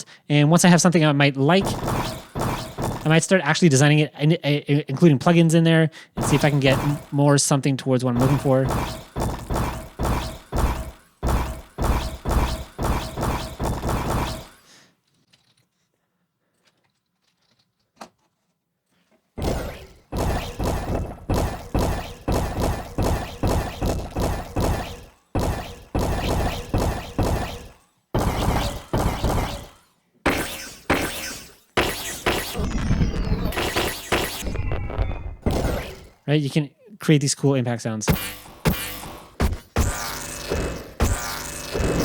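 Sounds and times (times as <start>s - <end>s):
crunchy impact sound effects: 1.6s - 3.6s, 6.2s - 7.3s, 8.1s - 14.7s, 19.4s - 36.2s, 38.1s - 42.0s.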